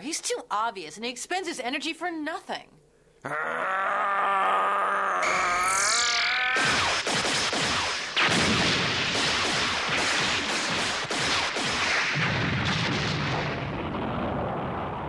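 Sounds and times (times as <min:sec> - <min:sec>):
energy blasts and explosions: 0:06.6 - 0:15.0.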